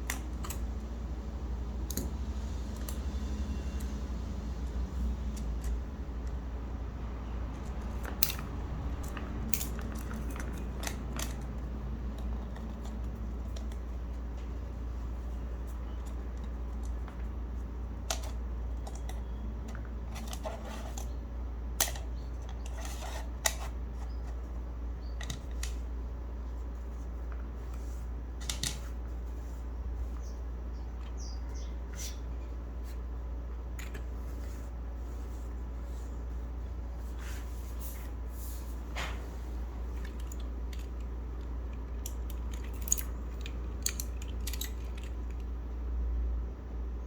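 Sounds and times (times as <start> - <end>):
steady low hum: 0.0 - 47.0
keyboard parts clicking and snapping: 7.4 - 14.2, 21.8 - 23.7, 39.9 - 45.6.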